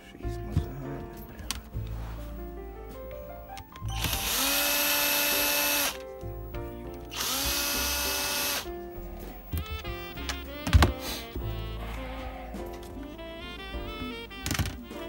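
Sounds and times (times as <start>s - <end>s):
multi-tool motor spinning: 4.0s - 6.0s, 7.1s - 8.7s.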